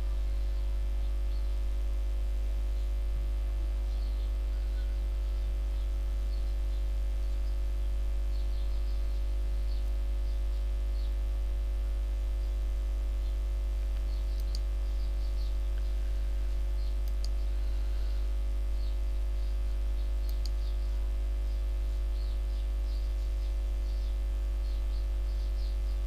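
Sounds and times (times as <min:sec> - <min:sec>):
low electrical hum: 0:00.0 - 0:26.0
faint high chirps: 0:03.8 - 0:11.2
sharp clicks: 0:13.8 - 0:14.7, 0:17.0 - 0:17.4, 0:20.2 - 0:20.6.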